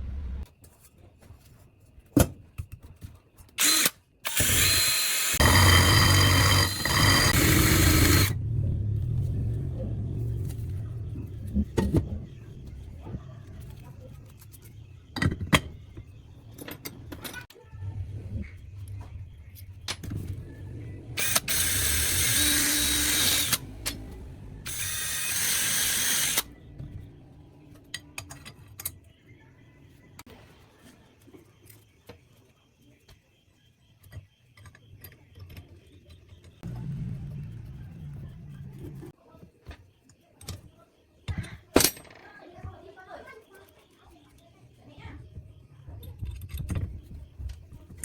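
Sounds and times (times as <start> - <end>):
small power tool running: 3.6 - 8.4, 21.2 - 23.7, 24.7 - 26.4.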